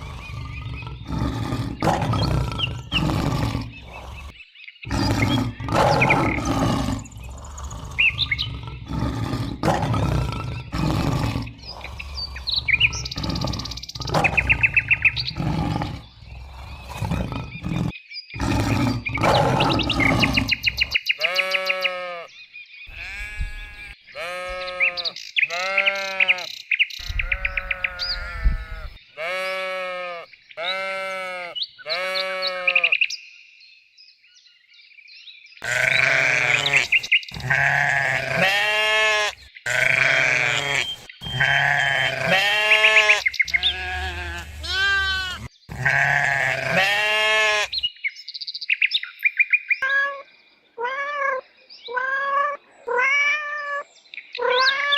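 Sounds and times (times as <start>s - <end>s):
sheep bleating: 21.2s - 22.3s, 22.9s - 26.5s, 27.1s - 33.0s, 35.6s - 47.8s.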